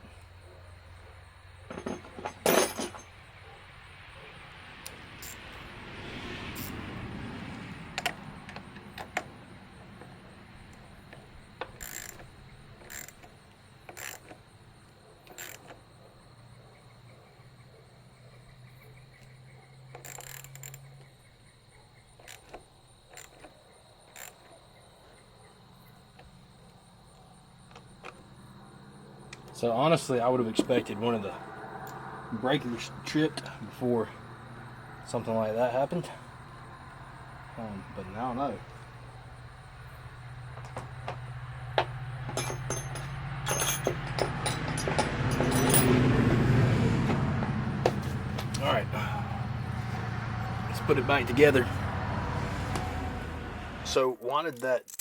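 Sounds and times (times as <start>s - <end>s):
hand tools clicking on metal: 11.1s - 14.4s, 40.6s - 46.0s.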